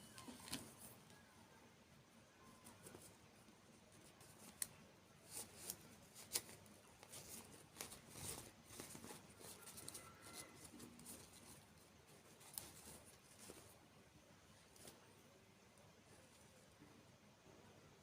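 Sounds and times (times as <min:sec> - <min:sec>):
small clicks and rustling: 0:00.0 - 0:01.2, 0:04.0 - 0:13.8, 0:14.6 - 0:15.0.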